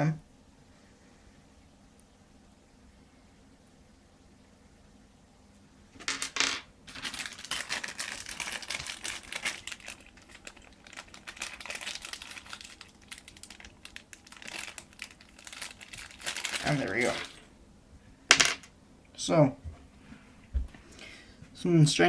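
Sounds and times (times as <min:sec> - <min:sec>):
plastic bag crinkling: 0:06.0 - 0:17.5.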